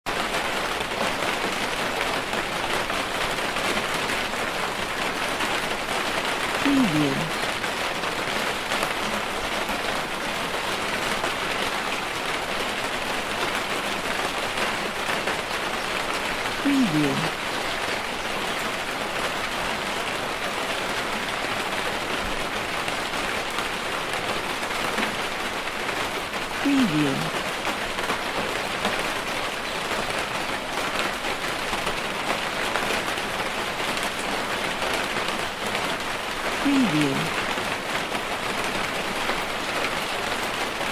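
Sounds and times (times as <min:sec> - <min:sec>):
steady rain: 0:00.1 - 0:40.9.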